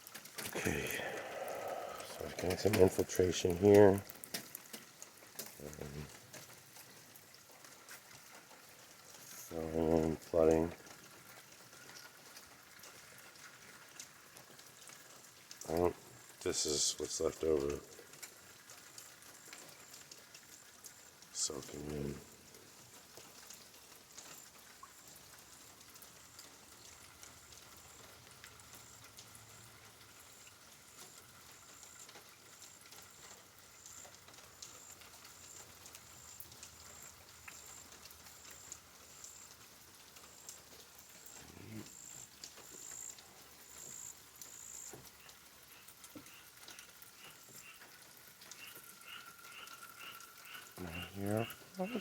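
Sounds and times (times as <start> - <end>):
frog chorus: 0.6 - 3.9, 41.2 - 52.0.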